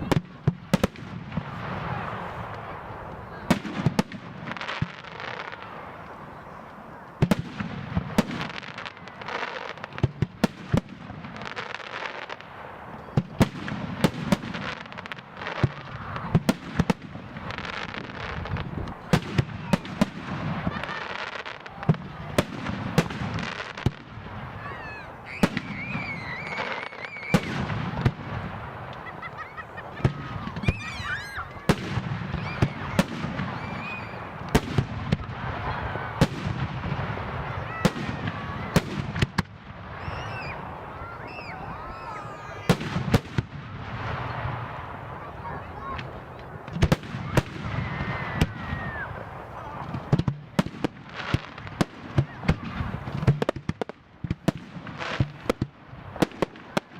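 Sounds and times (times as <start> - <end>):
high wavering whistles: 25.3 - 27.5.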